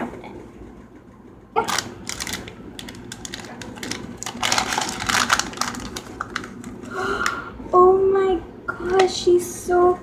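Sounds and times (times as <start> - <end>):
packet crinkling as opened: 1.6 - 7.4.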